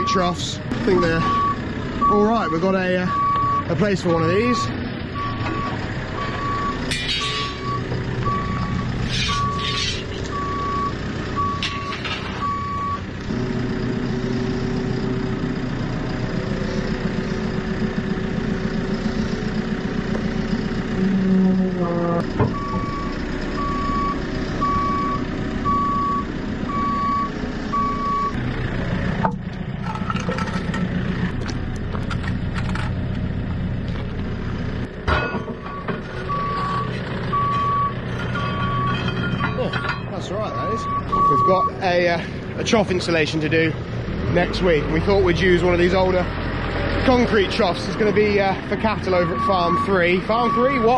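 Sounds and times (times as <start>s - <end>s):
reversing alarm beeping: 0.0s - 13.1s, 20.6s - 28.4s, 35.6s - 41.8s, 49.0s - 50.9s
diesel engine running: 0.0s - 50.9s.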